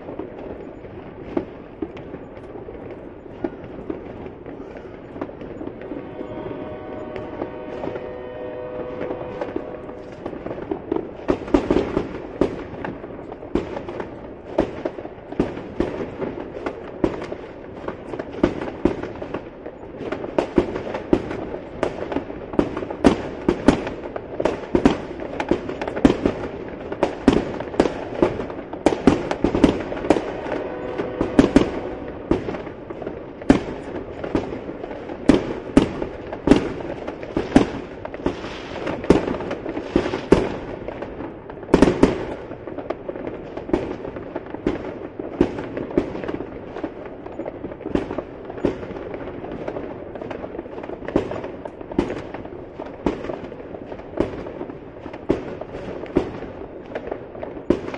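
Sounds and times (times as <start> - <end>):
fireworks bangs: 0.0 - 57.9.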